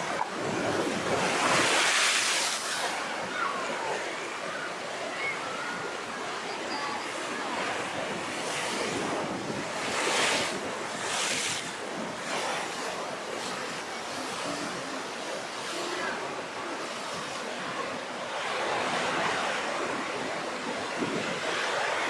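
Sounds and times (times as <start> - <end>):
waves breaking and washing: 0.0 - 22.0
wind on microphone: 19.1 - 22.0.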